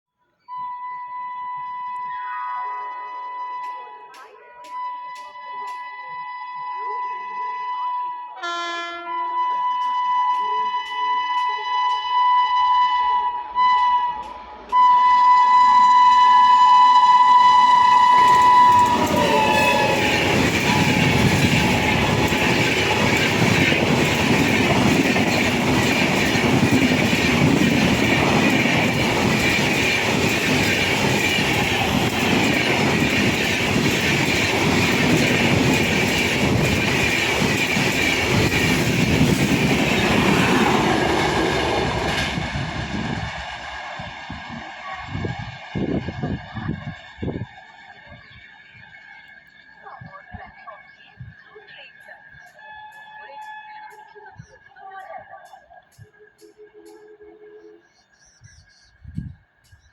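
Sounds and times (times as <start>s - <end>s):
shrill locomotive horn: 0.5s - 24.4s, 52.6s - 54.3s, 56.3s - 57.9s
train wheels clattering over rail joints: 18.0s - 43.8s.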